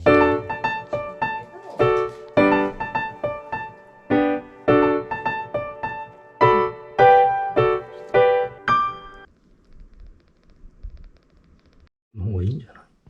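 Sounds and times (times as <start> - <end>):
piano melody: 0.0 - 9.3.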